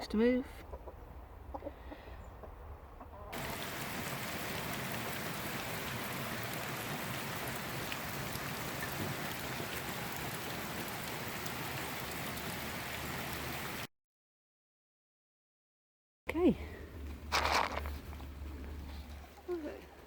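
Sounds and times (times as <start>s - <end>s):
steady rain falling: 3.3s - 13.9s.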